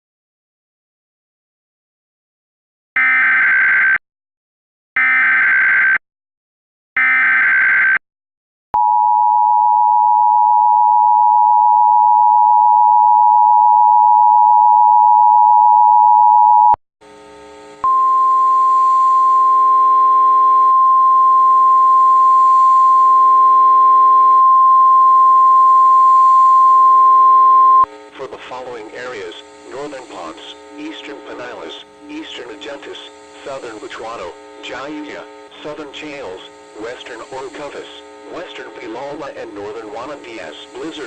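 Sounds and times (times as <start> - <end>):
data header bursts: 27.9 - 41.0.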